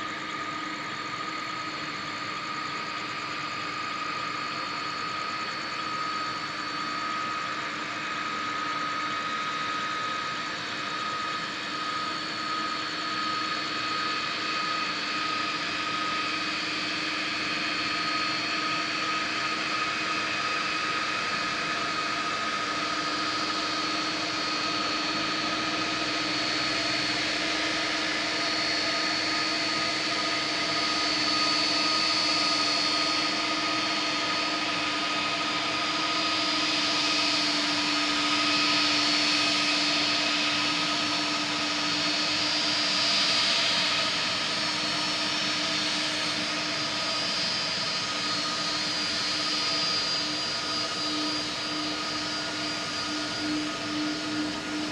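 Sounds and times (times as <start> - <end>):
jet engines idling whine: 0.0 - 54.9.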